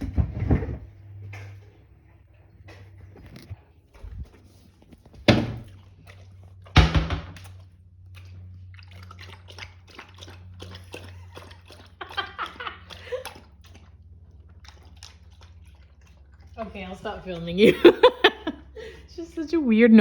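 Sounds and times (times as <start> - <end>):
dog eating wet food: 1.0 - 6.8, 7.4 - 18.8
loud thumps: 6.8 - 7.4.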